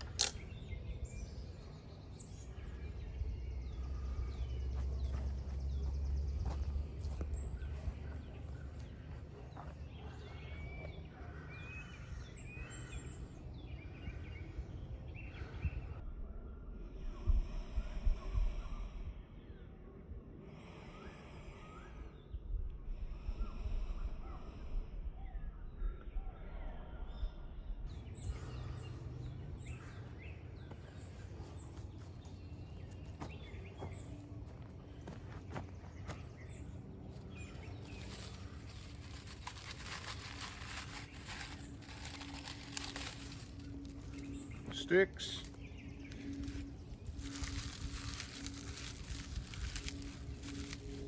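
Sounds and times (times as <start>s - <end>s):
small birds chirping: 0.0s - 16.0s, 27.8s - 51.0s
low background rumble: 26.8s - 51.0s.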